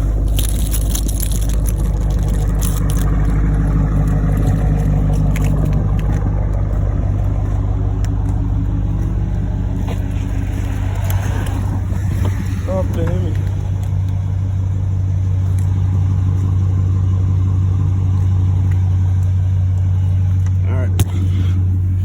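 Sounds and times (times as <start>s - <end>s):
car engine idling: 0.0s - 22.0s
snow scraping off car: 8.5s - 14.0s.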